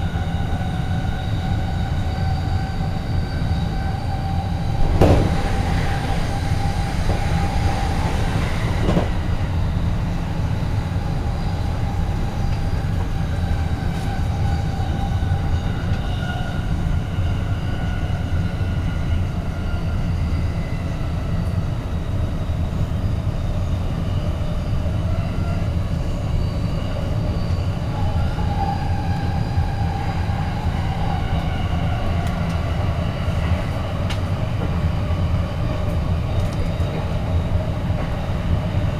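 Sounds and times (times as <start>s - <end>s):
train rumbling: 0.0s - 38.9s
faint whining tones: 0.2s - 16.8s.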